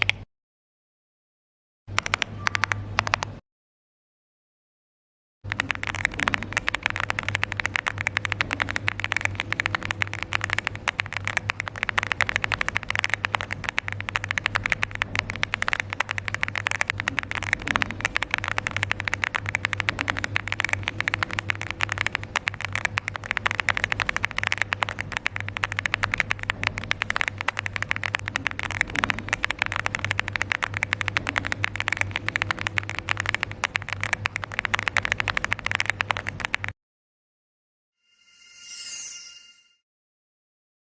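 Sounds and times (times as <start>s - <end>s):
mechanical keyboard typing: 1.9s - 3.4s, 5.5s - 36.8s
steady low hum: 5.5s - 36.3s.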